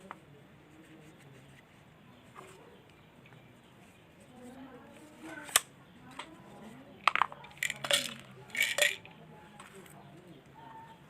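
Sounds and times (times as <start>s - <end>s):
small hard objects clicking: 7.0s - 9.2s.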